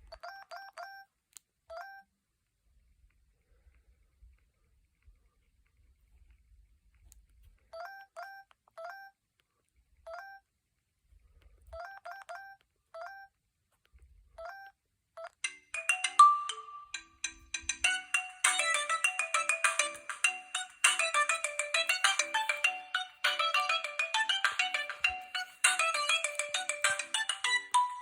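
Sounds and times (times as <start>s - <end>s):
phone ringtone electronic beeps: 14.4s - 28.0s
busy high-note ringtone: 15.4s - 28.0s.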